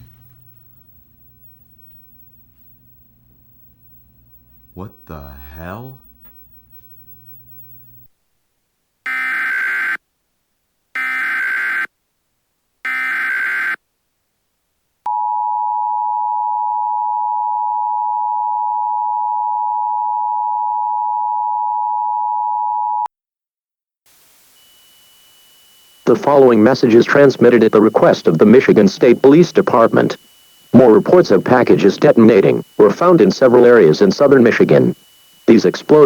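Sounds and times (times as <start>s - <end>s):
warbling data tone bursts: 24.8s - 36.0s
two-tone attention signal: 26.0s - 36.0s.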